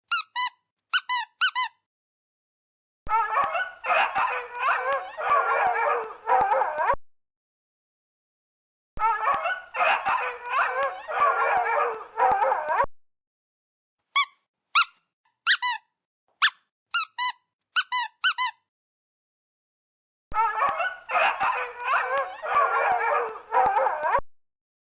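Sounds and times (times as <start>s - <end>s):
short high squeaks: 0.0s - 1.8s, 14.2s - 15.8s, 16.4s - 18.6s.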